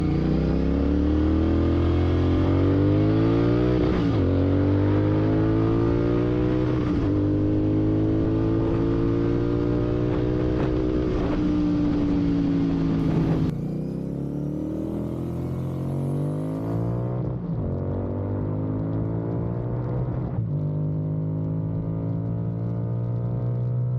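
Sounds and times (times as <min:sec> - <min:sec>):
loud motorcycle engine running: 0:12.9 - 0:16.8.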